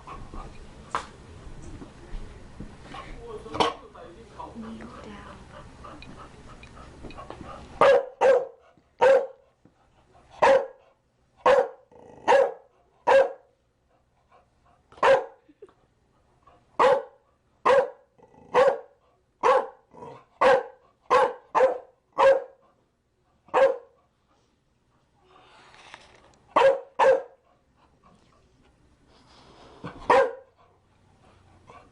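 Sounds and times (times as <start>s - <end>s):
dog barking: 7.8s - 9.4s, 10.4s - 10.8s, 11.4s - 13.5s, 15.0s - 15.4s, 16.8s - 19.8s, 20.4s - 22.6s, 23.5s - 24.0s, 26.6s - 27.4s, 30.1s - 30.5s.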